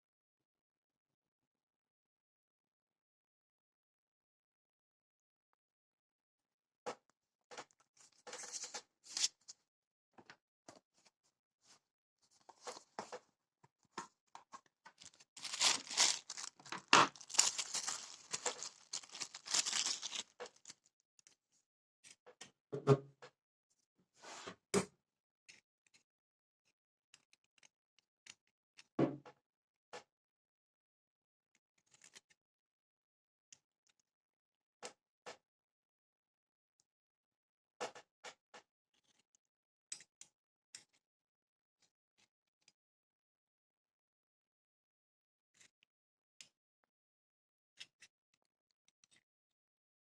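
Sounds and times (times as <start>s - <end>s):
scraping or rustling: 15.0s - 20.7s.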